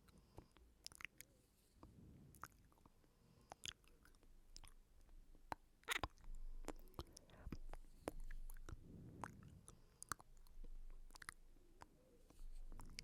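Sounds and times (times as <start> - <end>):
wet mouth clicks and smacks: 5.5 - 9.4.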